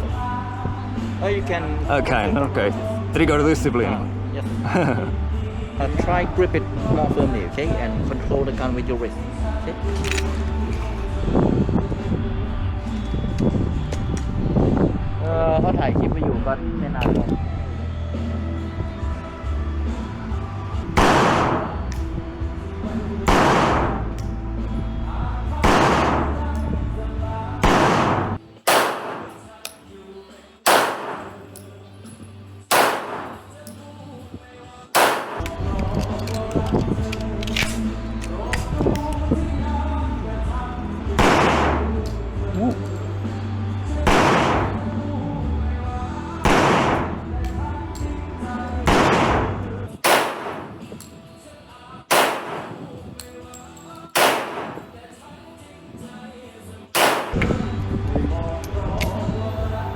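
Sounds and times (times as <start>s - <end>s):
background music: 0.0s - 59.9s
handgun shots with echo: 9.9s - 11.0s, 21.0s - 22.1s, 23.3s - 24.3s, 25.6s - 26.6s, 27.6s - 29.9s, 30.6s - 31.8s, 32.7s - 33.9s, 34.9s - 39.2s, 41.2s - 42.2s, 44.1s - 44.9s, 46.4s - 47.6s, 48.9s - 51.1s, 52.1s - 53.3s, 54.0s - 55.0s, 57.0s - 57.6s.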